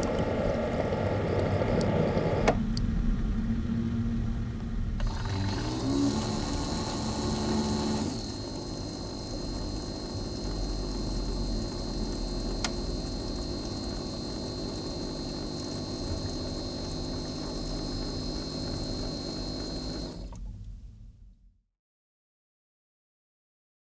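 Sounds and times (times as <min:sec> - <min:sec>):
coffee maker pump whining: 0:05.0 - 0:20.6.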